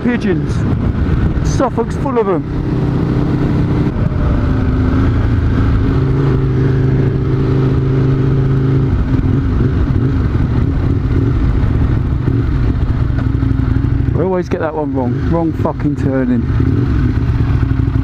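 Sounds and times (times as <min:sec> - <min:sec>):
wind rumble on microphone: 0:00.0 - 0:13.2
motorcycle engine running: 0:00.0 - 0:18.0.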